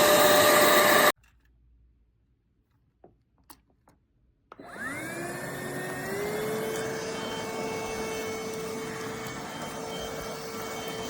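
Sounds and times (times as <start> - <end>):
vacuum cleaner motor whining: 0.0 - 1.1, 4.6 - 11.0.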